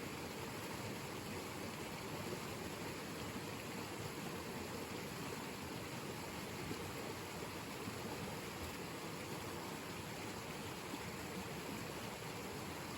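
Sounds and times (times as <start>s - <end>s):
mountain stream rushing: 0.0s - 12.9s.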